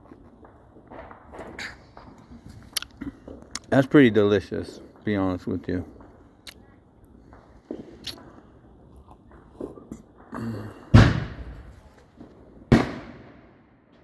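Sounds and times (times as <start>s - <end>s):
firecracker bangs with echo: 10.9s - 14.0s.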